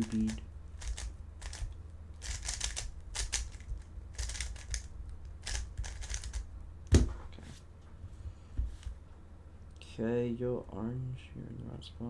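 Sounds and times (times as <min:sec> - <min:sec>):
puzzle cube plastic clicks: 0:00.0 - 0:06.4.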